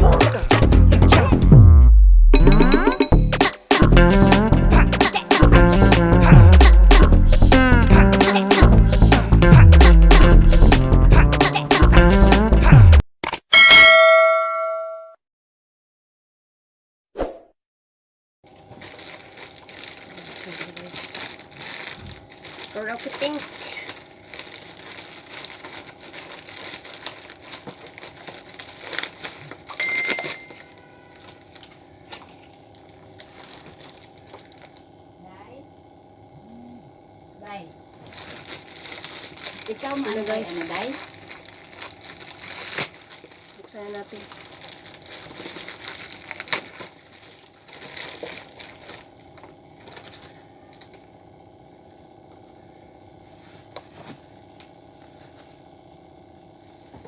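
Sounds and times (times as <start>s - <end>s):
packaging crinkling and rustling: 18.5s - 34.9s, 38.0s - 51.1s.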